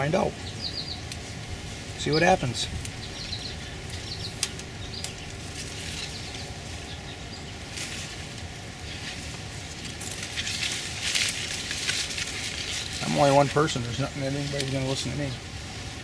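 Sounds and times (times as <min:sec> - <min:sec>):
bush rustling: 0:00.0 - 0:16.0
faint steady hum: 0:00.0 - 0:16.0
berries being picked clicks: 0:03.9 - 0:06.4.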